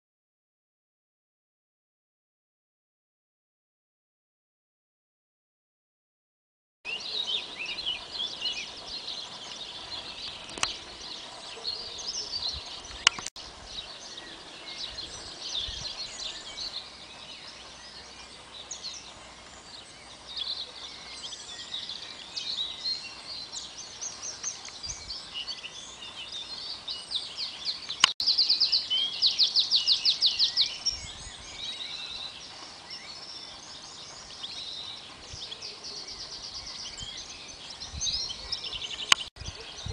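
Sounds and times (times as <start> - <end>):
songbirds singing and chirping: 6.9 - 39.9
sharp clicks: 13.0 - 13.3.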